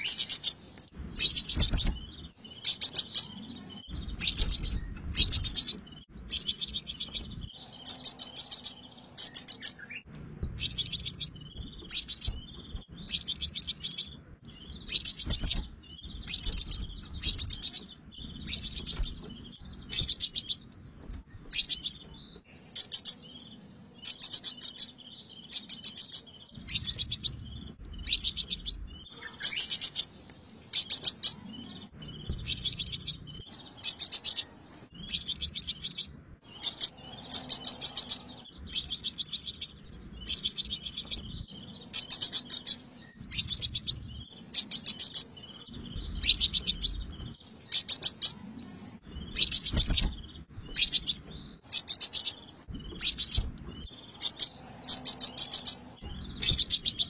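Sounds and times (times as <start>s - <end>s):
bird song buzzy trills: 0.0s - 57.0s.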